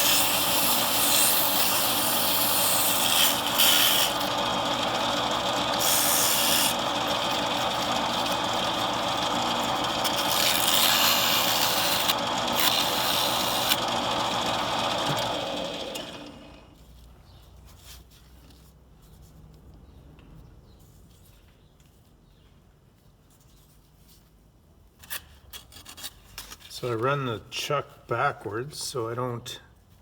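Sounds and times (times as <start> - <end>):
motor hum: 0.0 - 16.8.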